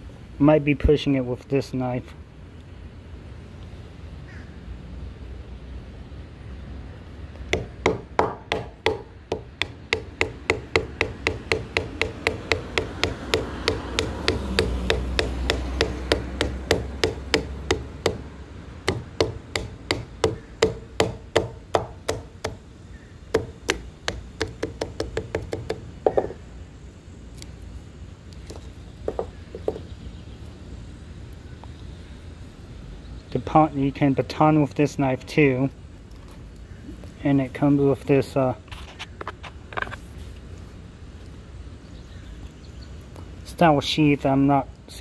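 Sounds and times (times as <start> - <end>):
baton knocking on knife spine: 7.6 - 18.2, 23.4 - 26.4.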